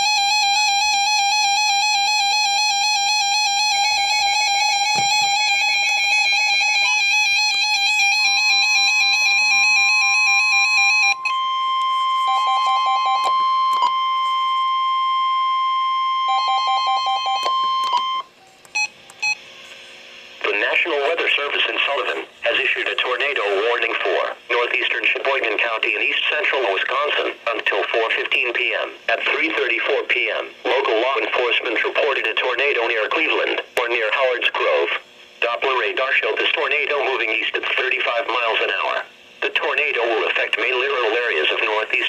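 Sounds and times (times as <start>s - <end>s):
warbling alarm tone: 0.0s - 18.3s.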